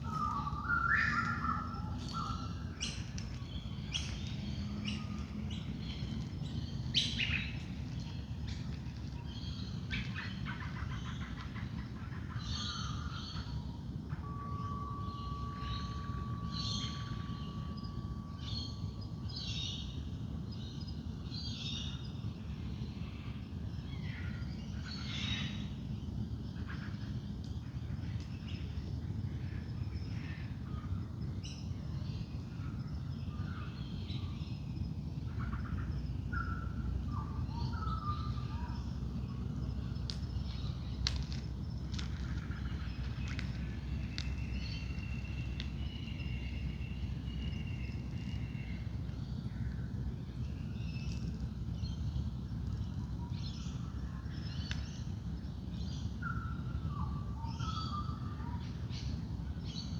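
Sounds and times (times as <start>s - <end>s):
birds chirping and calling: 0.0s - 8.7s
steady low rumble: 0.0s - 59.9s
singing bowl ringing tone: 14.2s - 20.2s.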